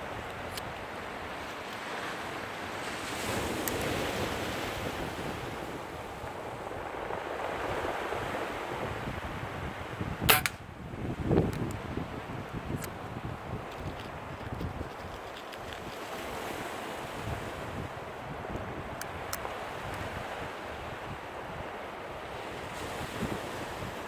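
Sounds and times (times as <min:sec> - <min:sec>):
surf and wind: 0:00.0 - 0:24.0
air pistol shot: 0:10.3 - 0:10.7.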